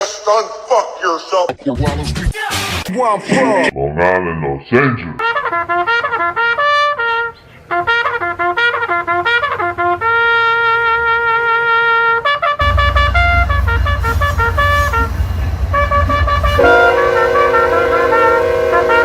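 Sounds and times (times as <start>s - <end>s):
trumpet-led brass melody: 5.2s - 19.0s
heavy low bass: 12.6s - 19.0s.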